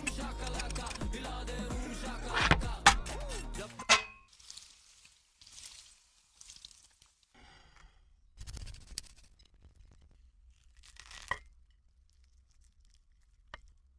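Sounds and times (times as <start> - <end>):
crispy chicken crust tearing: 10.4 - 13.9.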